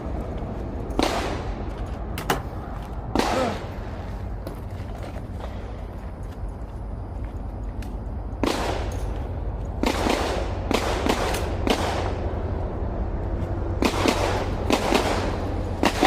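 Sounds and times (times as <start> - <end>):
gunshots with echo: 3.1 - 3.7, 9.8 - 12.2, 13.8 - 16.0.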